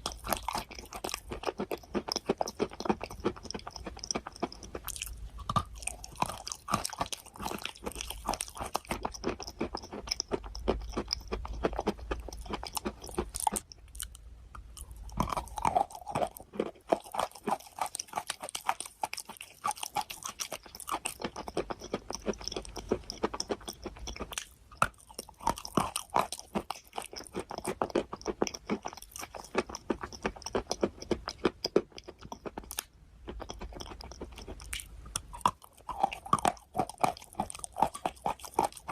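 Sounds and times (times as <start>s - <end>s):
person chewing crunchy food: 0.0s - 38.9s.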